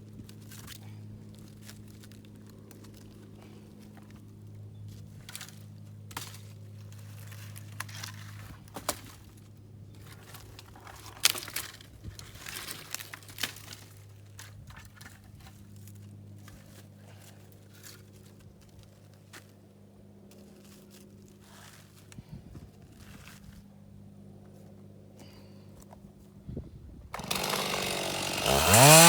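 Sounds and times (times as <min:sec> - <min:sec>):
crackling and rustling: 0:05.0 - 0:19.6.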